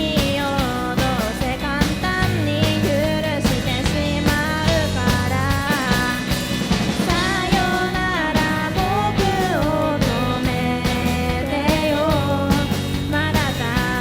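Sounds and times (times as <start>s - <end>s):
rock band with singing: 0.0s - 14.0s.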